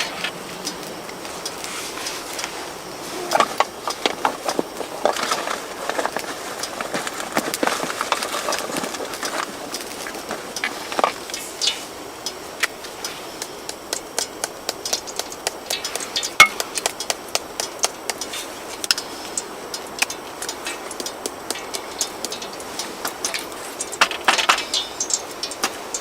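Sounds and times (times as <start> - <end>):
sharp clicks and pops: 0.0 - 26.0
steady hiss: 0.0 - 26.0.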